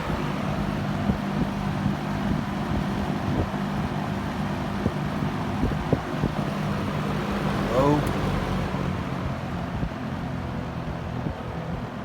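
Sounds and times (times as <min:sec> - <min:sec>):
box fan running: 0:00.0 - 0:08.6.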